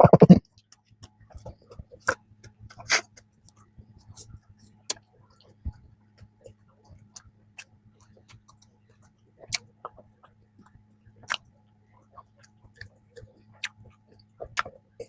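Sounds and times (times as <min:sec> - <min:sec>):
faint steady hum: 0:00.0 - 0:15.0
wet chewing mouth clicks: 0:04.0 - 0:14.8.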